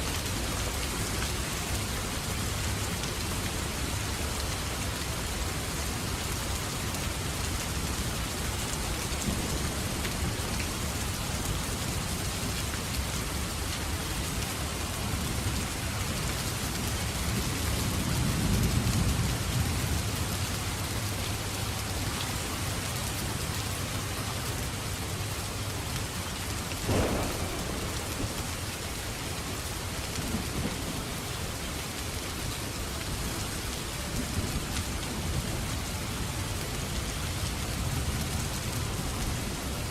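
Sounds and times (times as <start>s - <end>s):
heavy rain falling: 0.0s - 39.9s
sharp thunder crack: 26.8s - 29.0s
thunder rumbling: 26.8s - 31.6s.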